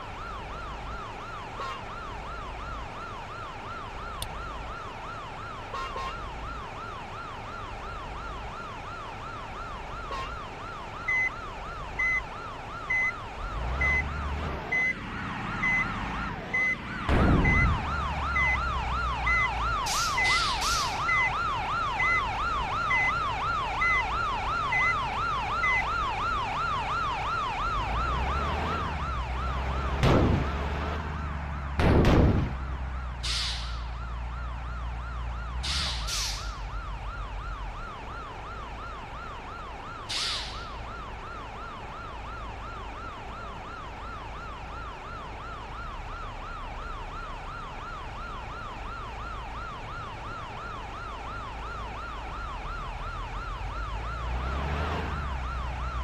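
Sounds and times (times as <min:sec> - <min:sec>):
electronic siren warbling: 0:12.0 - 0:31.7.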